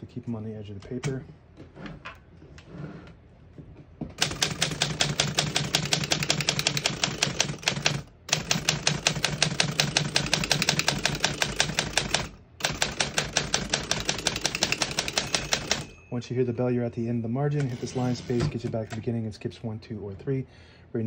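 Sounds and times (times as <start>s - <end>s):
manual typewriter typing: 4.2s - 16.0s, 17.5s - 19.2s.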